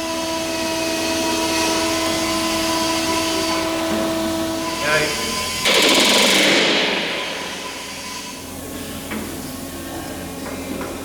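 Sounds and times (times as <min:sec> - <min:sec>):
rivet gun hammering: 0:05.6 - 0:07.8.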